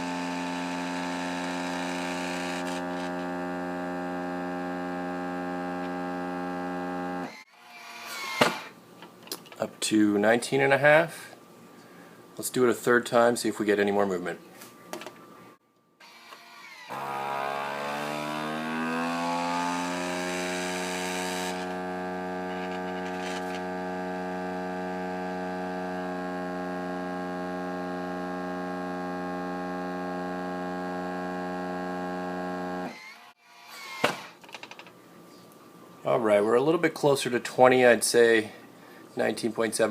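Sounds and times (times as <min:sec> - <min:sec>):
vacuum pump motor hum: 0:00.0 - 0:07.4, 0:16.9 - 0:32.9.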